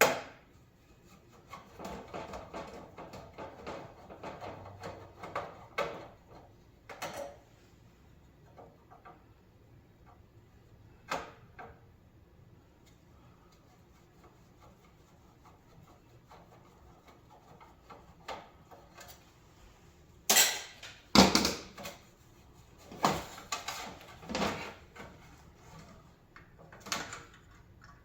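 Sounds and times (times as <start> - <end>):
metal parts clanking: 20.3 - 21.6.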